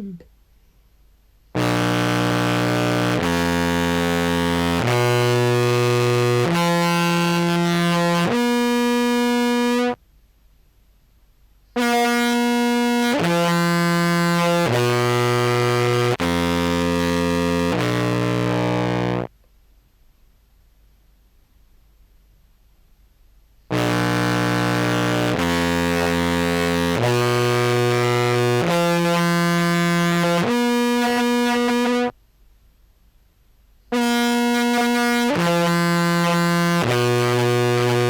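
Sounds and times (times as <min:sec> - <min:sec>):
distorted contrabass clarinet: 0:01.6 - 0:10.0, 0:11.8 - 0:19.3, 0:23.7 - 0:32.1, 0:34.0 - 0:38.0.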